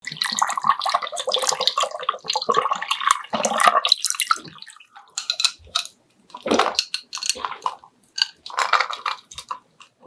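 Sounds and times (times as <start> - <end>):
slurping broth: 0.0 - 10.0
spoon stirring broth: 0.6 - 10.0
small clicks and crackles: 5.0 - 10.0.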